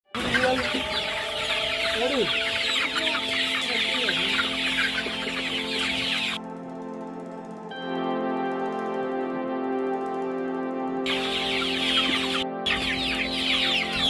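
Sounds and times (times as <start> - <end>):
chickens clucking: 0.1 - 6.4, 11.1 - 14.0.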